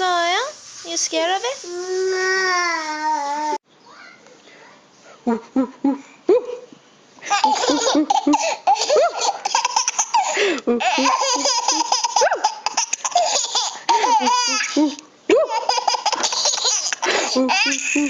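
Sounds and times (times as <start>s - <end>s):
baby laughing: 7.2s - 18.0s.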